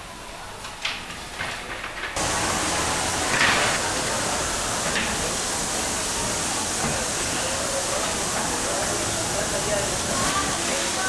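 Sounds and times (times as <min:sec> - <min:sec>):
factory machine and air noise: 0:02.2 - 0:11.0.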